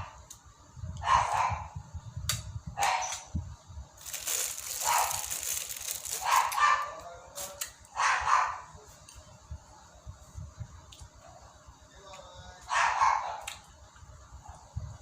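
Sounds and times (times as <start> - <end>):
dog barking: 1.0 - 1.8, 2.8 - 3.2, 4.8 - 5.2, 6.2 - 7.0, 7.9 - 8.7, 12.7 - 13.5.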